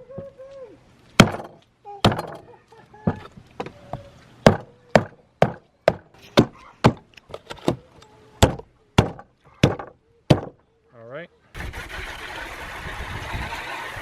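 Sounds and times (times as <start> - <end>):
hatchet chopping bone: 4.5 - 7.0.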